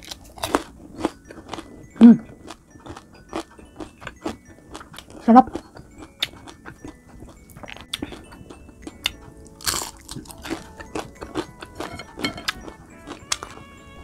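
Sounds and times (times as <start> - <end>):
crunching crispy fried food: 0.0 - 1.7, 2.4 - 13.6.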